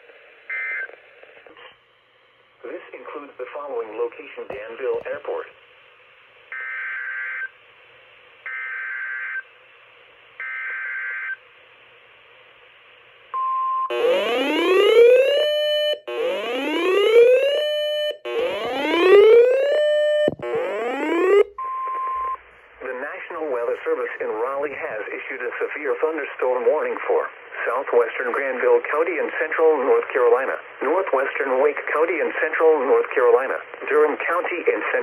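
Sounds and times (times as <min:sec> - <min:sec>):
synthesized rising alert sweeps: 0:13.9 - 0:15.5, 0:18.3 - 0:21.5
short steady beep: 0:21.6 - 0:22.4.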